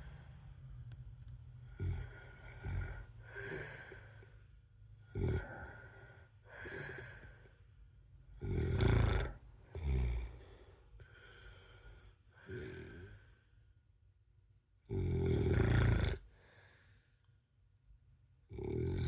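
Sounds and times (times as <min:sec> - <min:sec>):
man snoring: 0:01.7 - 0:04.0, 0:05.1 - 0:07.3, 0:08.4 - 0:10.5, 0:12.4 - 0:13.2, 0:14.9 - 0:16.3, 0:18.5 - 0:19.0.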